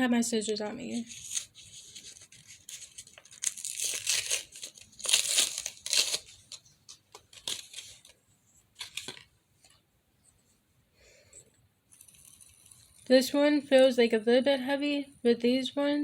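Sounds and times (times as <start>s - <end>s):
packaging tearing and crinkling: 1.1s - 8.2s, 8.8s - 9.3s.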